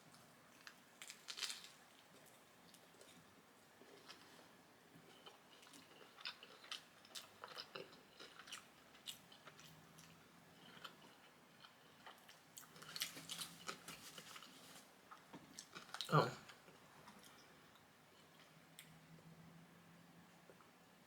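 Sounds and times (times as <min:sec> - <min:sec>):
person chewing and crunching: 0:00.5 - 0:02.4, 0:03.8 - 0:04.4, 0:05.0 - 0:16.1.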